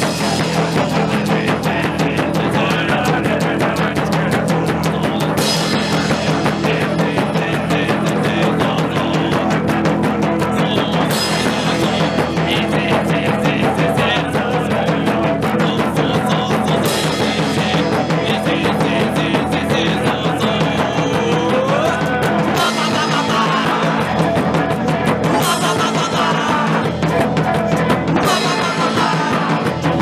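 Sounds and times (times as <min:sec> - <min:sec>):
rock band playing: 0:00.0 - 0:30.0.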